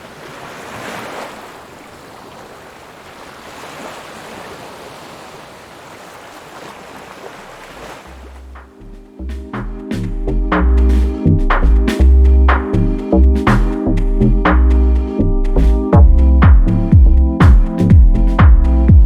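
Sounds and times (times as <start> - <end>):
waves washing onto rocky shore: 0.0 - 8.2
low bass note of music: 8.3 - 19.0.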